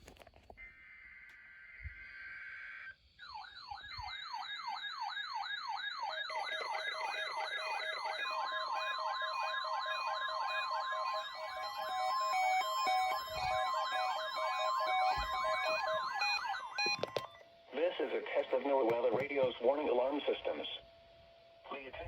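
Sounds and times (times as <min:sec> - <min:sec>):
siren sweeping up and down: 0:00.7 - 0:17.4
steady alarm tone: 0:00.7 - 0:18.2
high warbling alarm: 0:01.6 - 0:18.1
beeping tones: 0:06.3 - 0:17.4.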